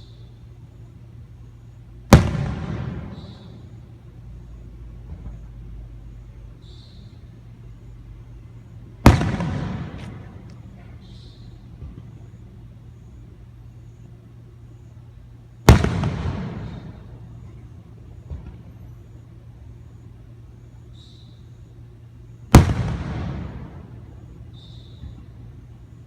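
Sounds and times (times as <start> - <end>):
loud firework bangs with echo: 2.1 - 3.7, 9.0 - 10.4, 15.7 - 17.1, 22.5 - 23.9.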